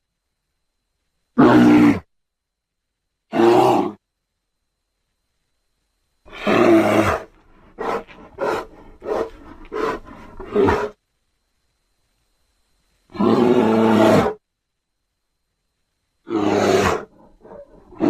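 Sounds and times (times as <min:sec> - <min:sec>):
bear roaring: 0:01.4 - 0:02.1, 0:03.3 - 0:04.0, 0:06.3 - 0:11.0, 0:13.1 - 0:14.4, 0:16.2 - 0:18.0
bear growls: 0:03.3 - 0:04.0, 0:06.3 - 0:11.0, 0:13.1 - 0:14.4, 0:16.2 - 0:18.0.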